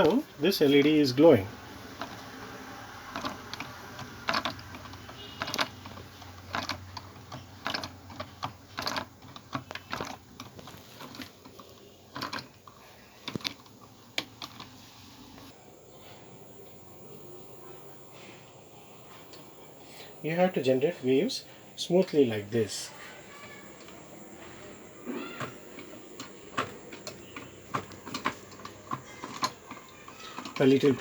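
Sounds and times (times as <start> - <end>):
mechanism clicking and knocking: 0.8 - 14.8, 23.3 - 31.0.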